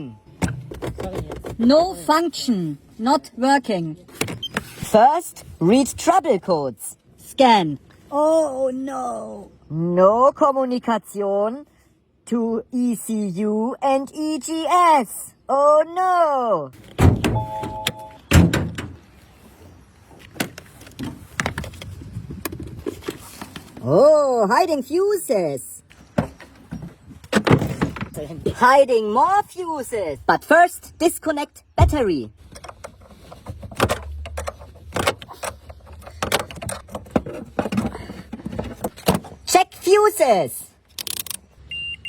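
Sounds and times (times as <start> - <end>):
short electronic beep: 17.4 - 18.2, 41.7 - 42.0.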